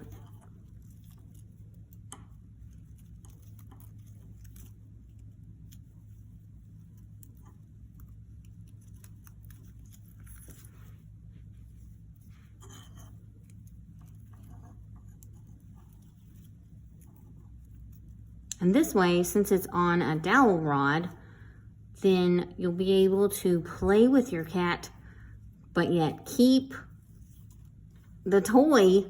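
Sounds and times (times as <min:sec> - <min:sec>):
ribbon rustling and clicking: 0:00.0 - 0:18.7
low room hum: 0:00.0 - 0:29.0.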